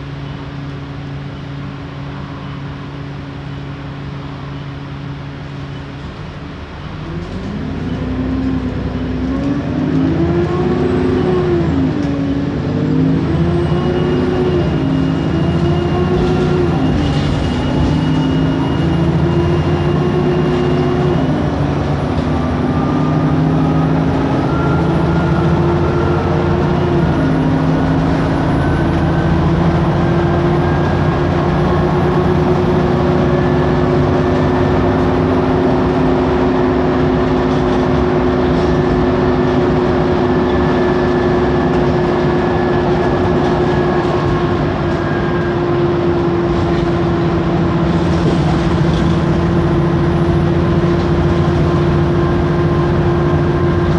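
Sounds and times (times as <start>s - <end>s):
bus cooling fans droning: 0.0s - 53.9s
turbocharger whine: 0.0s - 53.9s.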